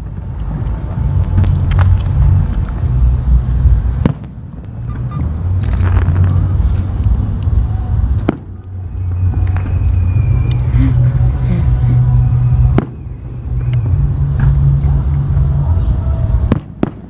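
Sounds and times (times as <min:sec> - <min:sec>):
fireworks rumble: 0:00.0 - 0:17.0
fireworks sharp cracks: 0:03.8 - 0:14.7, 0:16.3 - 0:17.0.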